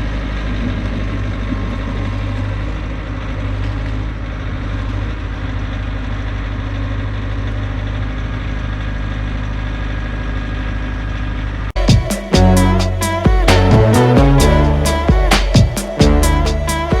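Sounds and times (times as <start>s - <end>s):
music: 11.8s - 17.0s.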